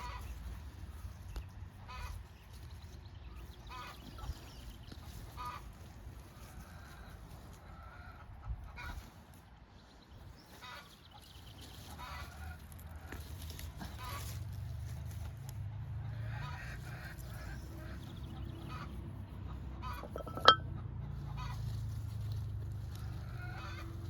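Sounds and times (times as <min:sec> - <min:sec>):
chickens clucking: 0:11.9 - 0:14.3.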